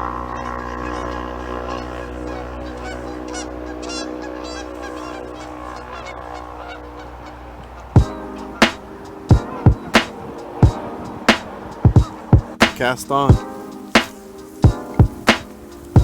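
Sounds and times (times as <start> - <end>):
geese honking: 0.0 - 16.0
steady droning tone: 0.0 - 16.0
loud sharp music beats: 8.0 - 16.0.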